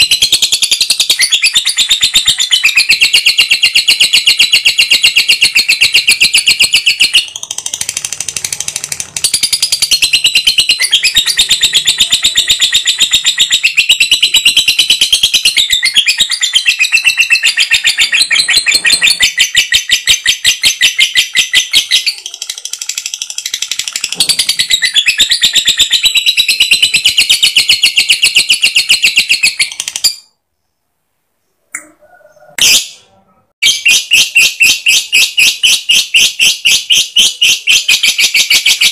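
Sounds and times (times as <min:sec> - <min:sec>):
bird chattering trill: 0:00.0 - 0:30.3.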